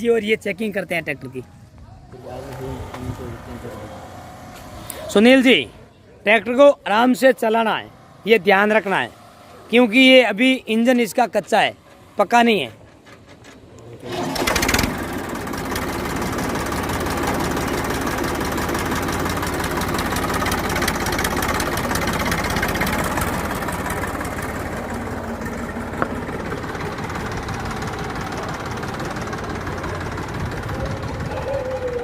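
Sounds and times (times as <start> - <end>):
tractor diesel engine running: 0.0 - 32.0.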